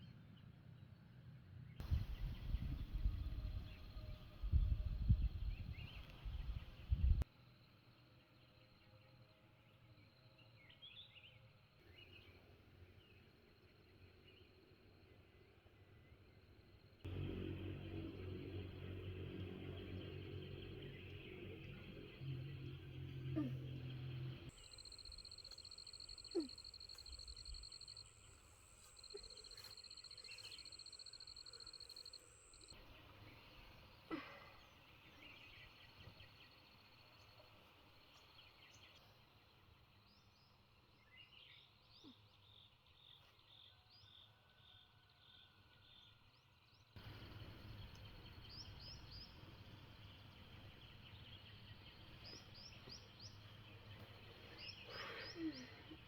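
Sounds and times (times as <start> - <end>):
high steady whine: 17.1 - 25.6
bird chirps: 18.5 - 34.0.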